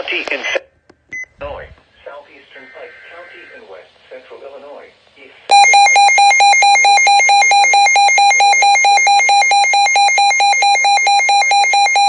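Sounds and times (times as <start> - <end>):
buzzy electronic alarm beeping: 5.5 - 12.0.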